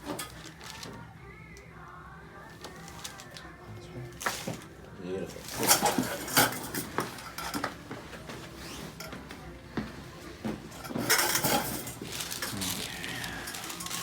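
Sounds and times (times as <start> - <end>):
rustling: 11.1 - 14.0.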